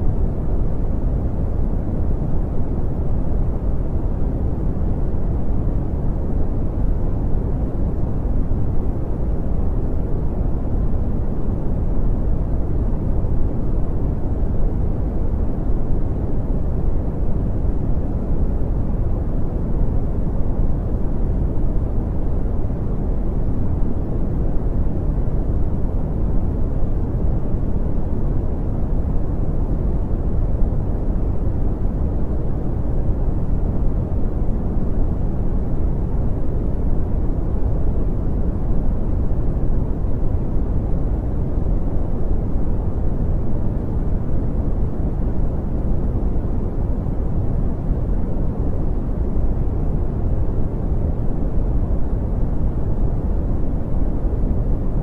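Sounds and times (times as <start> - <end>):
brown noise rumbling hiss: 0.0 - 55.0.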